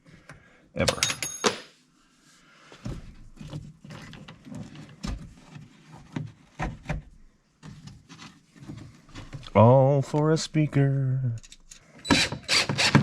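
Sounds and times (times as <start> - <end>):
clicks and knocks from handling parts: 11.4 - 11.9.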